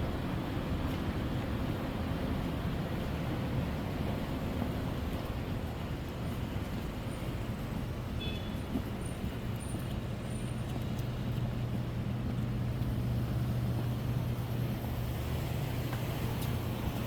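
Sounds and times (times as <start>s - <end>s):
road noise: 7.9s - 17.0s.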